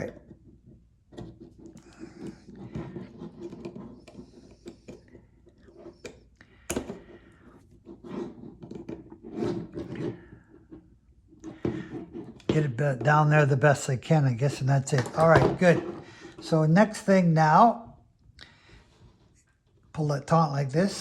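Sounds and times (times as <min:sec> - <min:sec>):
small clicks taps and scraping: 0:00.0 - 0:13.2.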